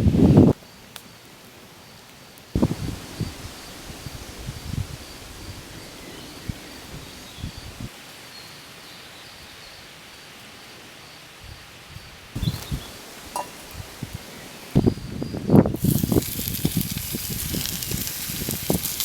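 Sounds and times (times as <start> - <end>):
steady outdoor hiss: 0.0 - 19.0.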